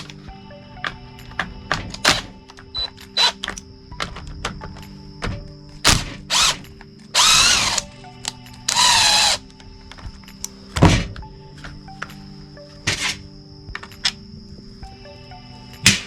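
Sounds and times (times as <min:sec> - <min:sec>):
faint background music: 0:00.0 - 0:16.0
plastic parts clicking and knocking: 0:00.8 - 0:06.8
power drill spinning: 0:02.8 - 0:03.4, 0:06.3 - 0:06.6, 0:07.2 - 0:07.9, 0:08.7 - 0:09.4.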